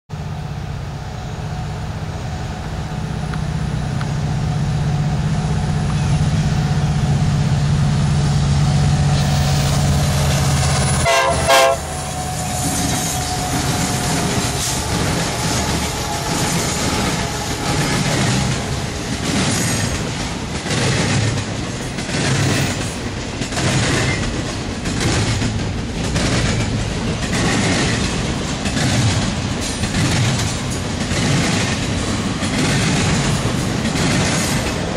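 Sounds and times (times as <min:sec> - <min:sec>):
diesel locomotive engines: 0:00.1 - 0:34.9
wheels clattering over rail joints: 0:08.8 - 0:34.9
locomotive horn blast: 0:10.0 - 0:18.9.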